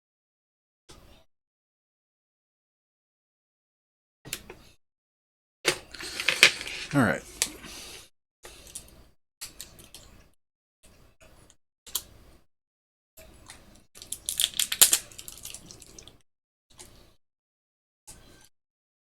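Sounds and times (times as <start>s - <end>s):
tools and parts clicking: 5.7s - 7.5s.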